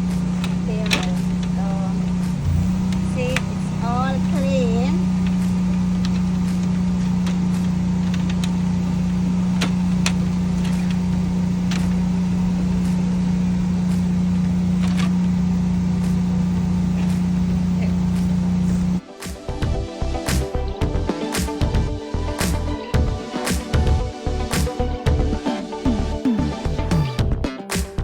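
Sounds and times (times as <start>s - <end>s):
motor hum: 0.0s - 19.0s.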